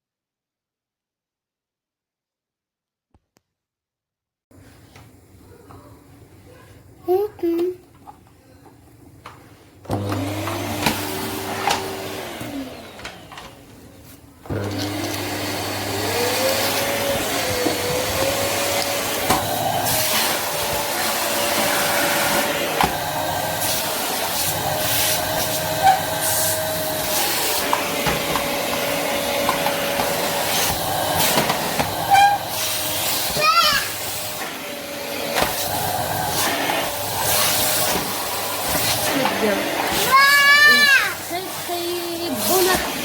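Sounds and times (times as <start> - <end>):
vacuum cleaner motor whine: 9.8 - 43.0.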